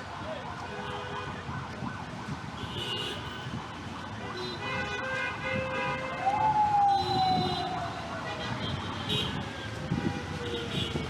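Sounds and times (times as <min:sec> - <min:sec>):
traffic noise: 0:00.0 - 0:11.0
siren wailing: 0:06.1 - 0:08.4.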